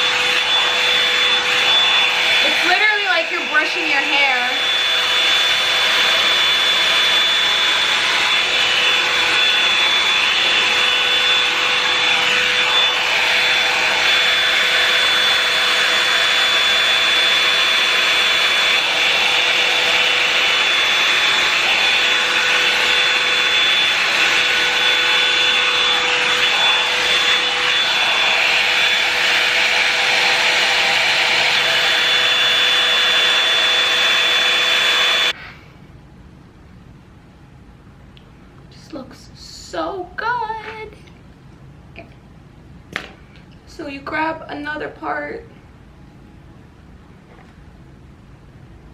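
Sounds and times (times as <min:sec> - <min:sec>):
hot-air brush fan whine: 0:00.0 - 0:36.0.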